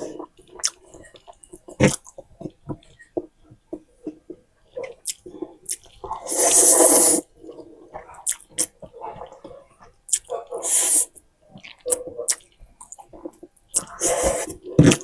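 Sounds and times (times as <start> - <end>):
wet chewing and smacking: 0.0 - 6.2, 7.3 - 15.0
noodle slurp: 5.7 - 7.3.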